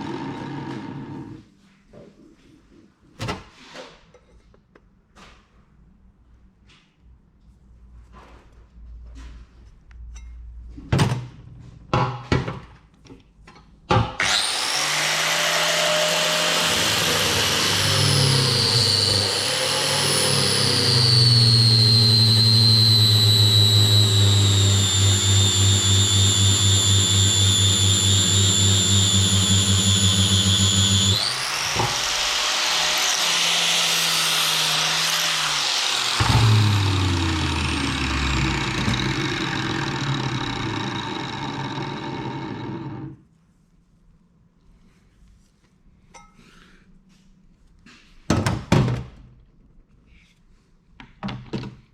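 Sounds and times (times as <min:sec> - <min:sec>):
electric power tool whining: 0:14.2 - 0:43.2.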